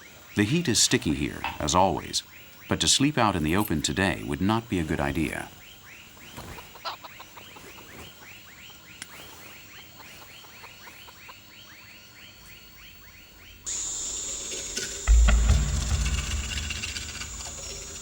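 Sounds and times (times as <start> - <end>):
loud hiss: 13.7 - 18.0
deep thump: 15.1 - 18.0.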